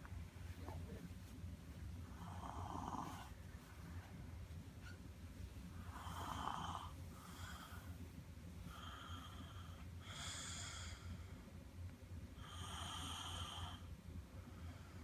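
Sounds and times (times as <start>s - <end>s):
child snoring: 2.1s - 3.4s, 5.8s - 7.8s, 12.4s - 13.9s.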